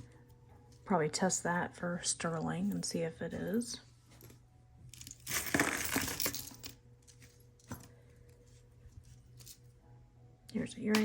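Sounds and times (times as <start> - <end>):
jewelry clinking and rattling: 4.9 - 9.8.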